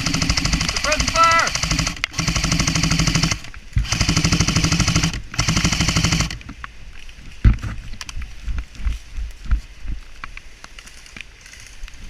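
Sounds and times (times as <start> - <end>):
airsoft rifle firing bursts: 0.0 - 6.4.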